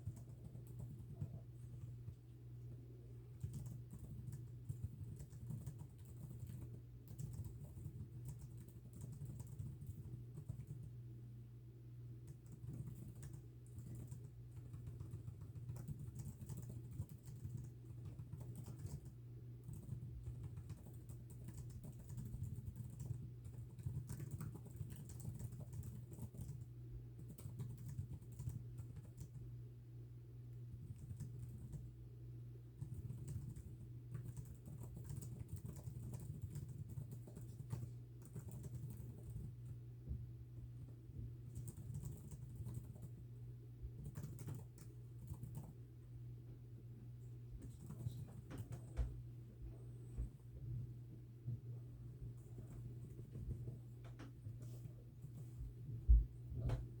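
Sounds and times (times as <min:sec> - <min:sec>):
typing on computer keyboard: 0:00.0 - 0:02.2, 0:03.3 - 0:11.0, 0:12.2 - 0:29.4, 0:30.7 - 0:31.9, 0:32.8 - 0:39.8, 0:41.5 - 0:43.2, 0:43.9 - 0:45.8, 0:47.6 - 0:49.0
steady low hum: 0:00.0 - 0:57.0.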